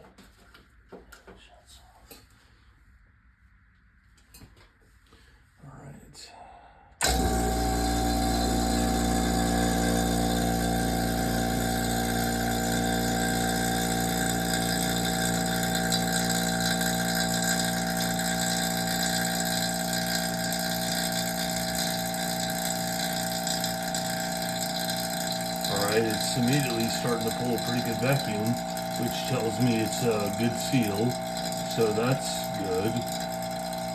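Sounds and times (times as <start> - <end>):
vacuum pump running: 7.0 - 33.9.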